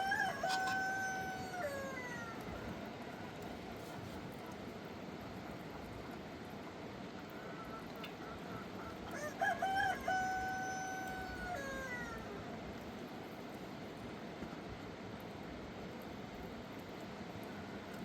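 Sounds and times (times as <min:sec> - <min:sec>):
rooster crowing: 0:00.0 - 0:02.6, 0:09.1 - 0:12.4.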